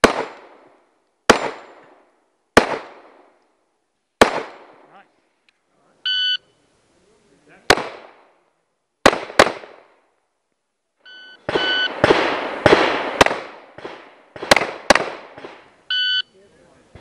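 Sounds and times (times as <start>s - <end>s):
electronic timer beep: 6.1s - 6.5s, 11.1s - 11.9s, 15.9s - 16.3s.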